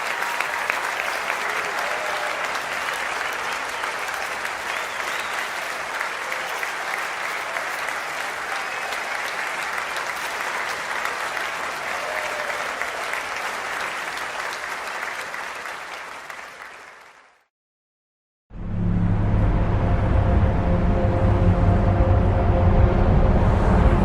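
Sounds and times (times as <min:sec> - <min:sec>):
large crowd applauding: 0:00.0 - 0:17.5.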